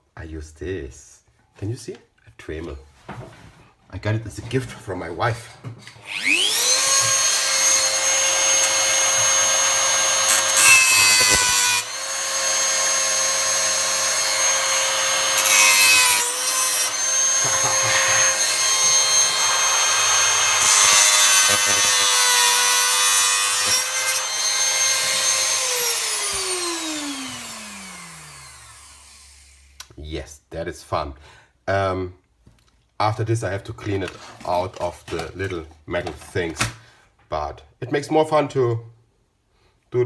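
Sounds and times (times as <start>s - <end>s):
rotary tool grinding metal: 6.0s - 29.6s
rotary tool winding down: 6.0s - 29.7s.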